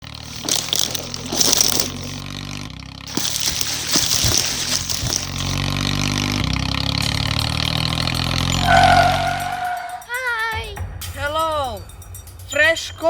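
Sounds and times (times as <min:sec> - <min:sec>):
engine running: 0:00.0 - 0:10.1.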